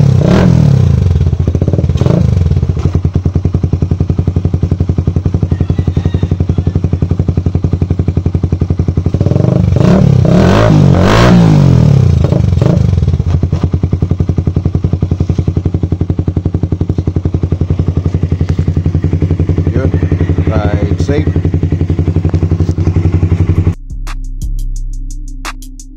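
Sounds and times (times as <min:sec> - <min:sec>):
motorcycle engine idling and revving: 0:00.0 - 0:24.2.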